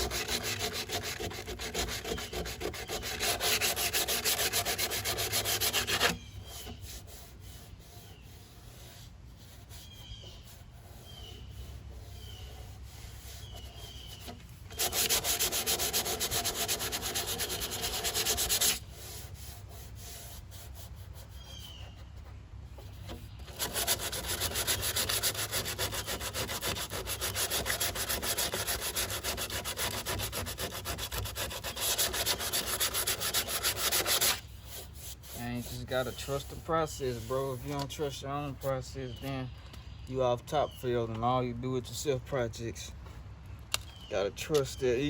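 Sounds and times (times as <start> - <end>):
electric palm sander sanding: 0.0 - 9.8, 14.8 - 21.0, 23.5 - 37.9.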